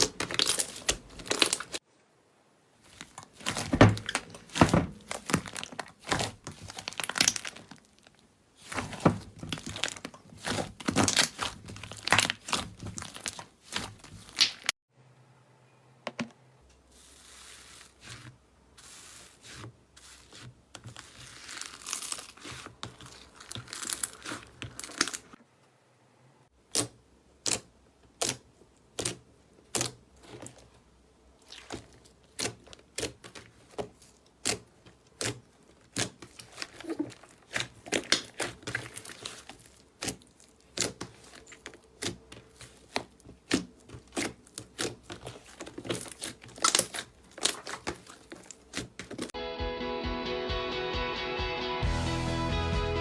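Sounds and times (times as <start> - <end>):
slime crackling and popping: 0.0 - 1.8, 2.9 - 14.8, 20.3 - 25.4, 26.7 - 30.7, 31.4 - 49.4
soft crinkling: 0.0 - 14.8, 16.7 - 25.4, 28.2 - 49.4.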